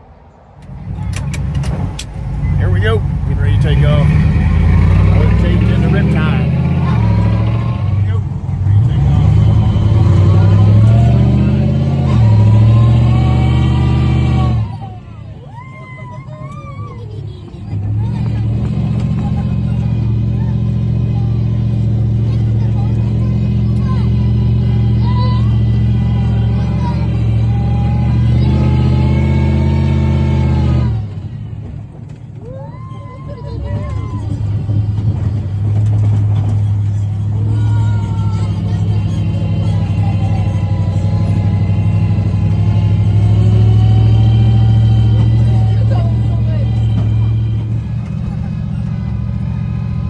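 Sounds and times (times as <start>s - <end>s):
truck engine revving: 0.0s - 50.0s.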